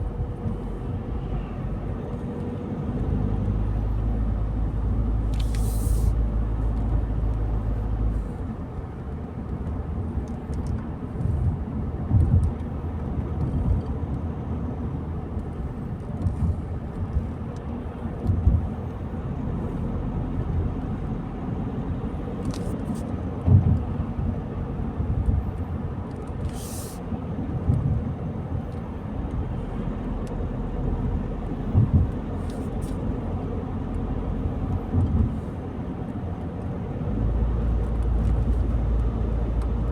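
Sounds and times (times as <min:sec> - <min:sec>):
car engine and tyres rumbling: 0:00.0 - 0:39.9.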